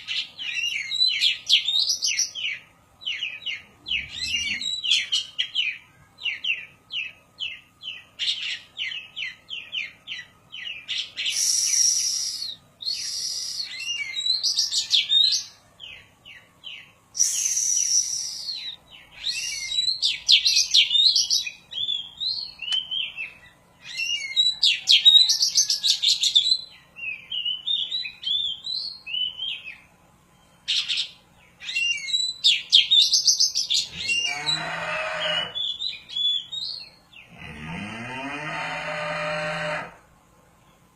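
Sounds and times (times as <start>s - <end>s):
bird singing varied song: 0.0s - 37.5s
bird moo-like call: 3.8s - 5.1s, 33.7s - 35.8s, 37.2s - 40.1s.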